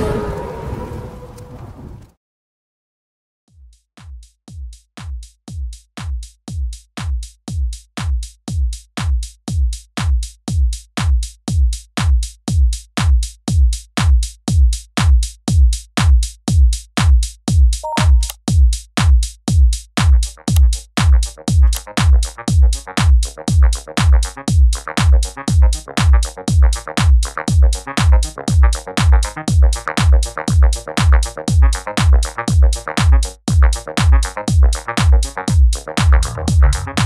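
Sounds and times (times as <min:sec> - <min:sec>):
drum machine kick: 0:03.7 - 0:37.0
electronic dance music: 0:17.8 - 0:18.4, 0:20.2 - 0:37.0.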